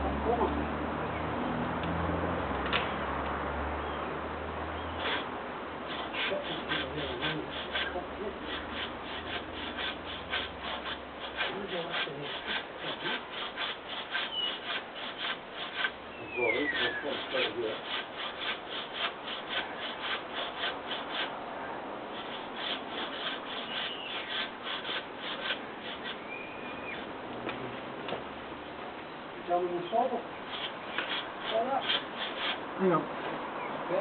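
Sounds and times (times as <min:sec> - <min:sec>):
hand saw cutting wood: 0:05.0 - 0:21.4, 0:22.1 - 0:27.1, 0:30.4 - 0:33.0.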